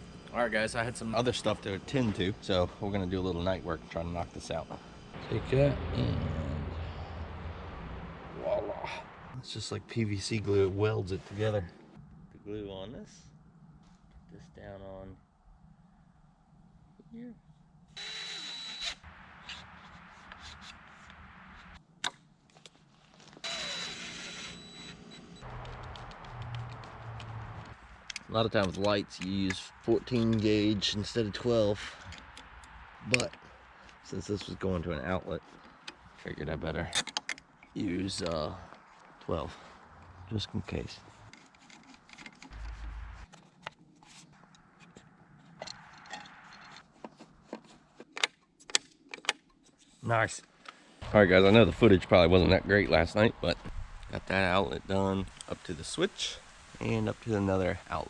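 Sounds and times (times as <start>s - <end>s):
steady hiss: 25.4s - 35.4s, 50.0s - 58.0s
rubbing and handling noises: 40.7s - 50.9s
small objects scraping and clicking: 41.2s - 49.9s.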